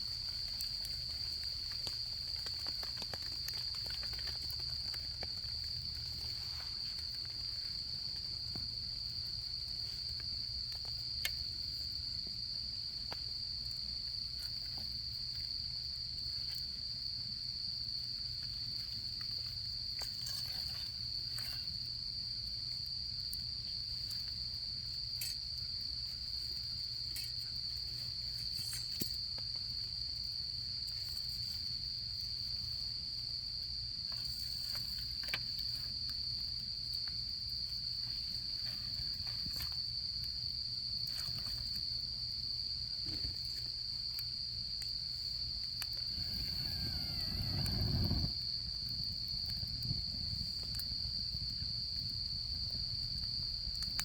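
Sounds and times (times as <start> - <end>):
campfire crackling: 0.0 - 27.4, 44.8 - 54.0
crickets trilling: 0.0 - 54.0.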